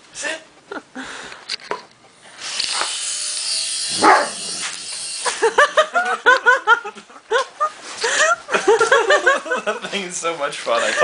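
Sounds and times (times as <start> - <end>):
toy helicopter rotors whirring: 2.3 - 5.9
dog barking: 4.0 - 4.4.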